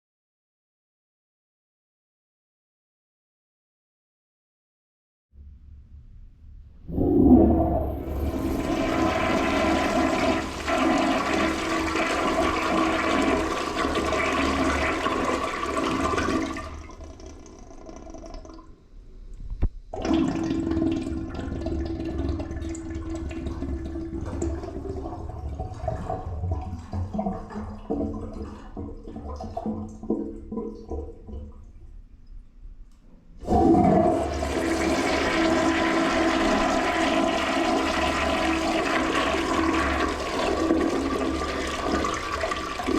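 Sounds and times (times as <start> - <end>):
toilet flushing: 6.9 - 18.7, 19.9 - 31.6, 33.4 - 42.9
weak uneven water flow: 6.9 - 42.9.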